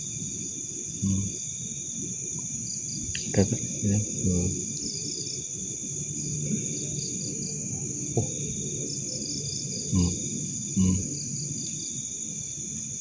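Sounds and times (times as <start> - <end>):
crickets chorus: 0.0 - 13.0.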